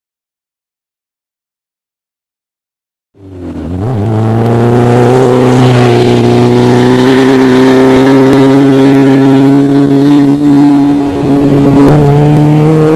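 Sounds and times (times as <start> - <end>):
race vehicle engine high revs: 3.2 - 12.9.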